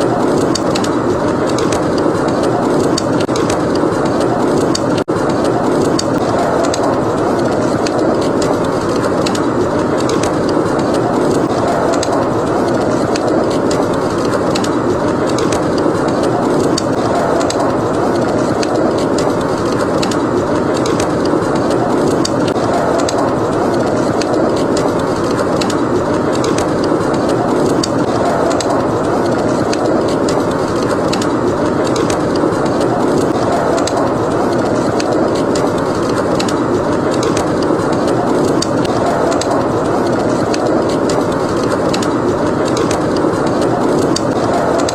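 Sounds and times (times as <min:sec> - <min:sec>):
howling wind: 0:00.0 - 0:44.9
wood fire crackling: 0:00.0 - 0:44.9.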